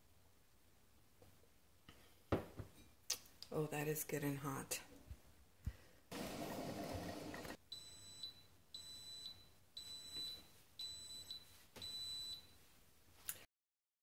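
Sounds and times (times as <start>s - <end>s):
coffee maker beeps: 6.2s - 12.4s.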